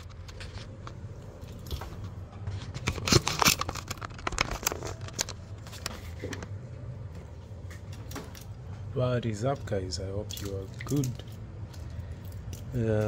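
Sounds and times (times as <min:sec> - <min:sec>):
objects being handled: 0:00.0 - 0:08.9
steady low hum: 0:00.0 - 0:13.0.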